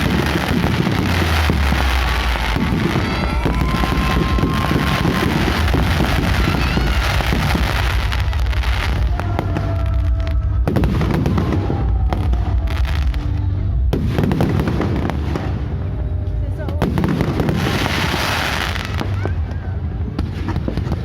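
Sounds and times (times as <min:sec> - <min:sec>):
fireworks sharp bangs: 0:00.0 - 0:16.1
fireworks booming and crackling: 0:00.0 - 0:21.0.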